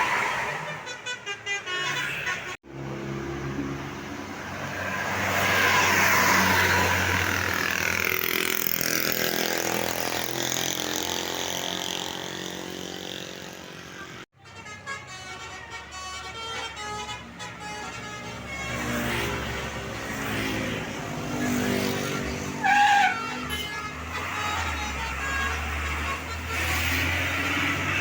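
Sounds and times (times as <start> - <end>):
bus multi-tone air horn tune: 0.4 - 2.6, 13.2 - 20.3, 22.1 - 28.0
bus engine running: 22.1 - 28.0.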